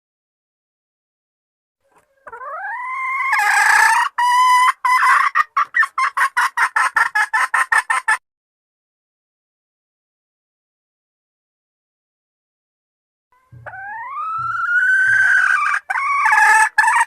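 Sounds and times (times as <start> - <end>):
hen clucking: 1.8 - 8.2, 13.4 - 17.0
hen rising call: 13.4 - 16.9.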